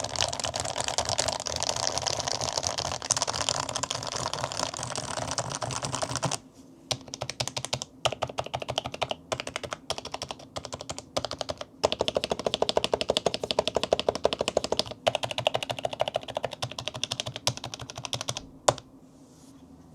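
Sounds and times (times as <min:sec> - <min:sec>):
fast keyboard typing: 0:00.0 - 0:18.8.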